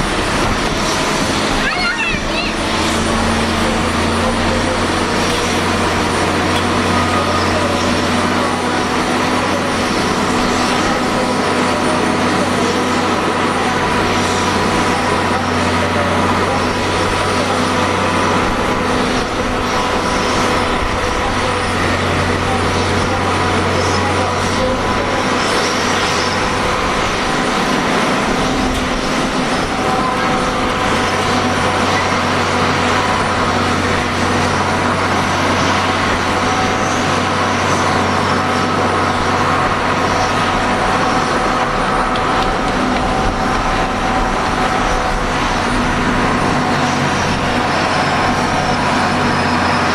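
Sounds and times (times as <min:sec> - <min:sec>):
jet engines whining at low power: 0:00.0 - 0:49.9.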